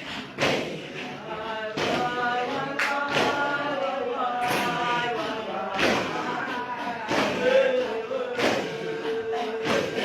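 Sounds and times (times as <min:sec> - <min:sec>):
congregation singing a chant: 0:00.0 - 0:10.0
sharp percussive strikes: 0:01.7 - 0:03.7, 0:04.4 - 0:10.0.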